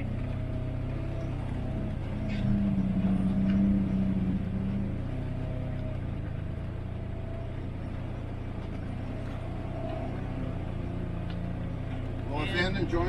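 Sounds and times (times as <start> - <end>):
off-road vehicle engine running: 0.0 - 13.0.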